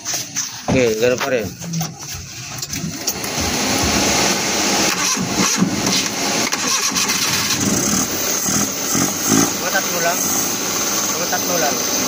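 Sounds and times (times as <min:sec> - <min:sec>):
engine cranking on starter: 0:01.7 - 0:10.1.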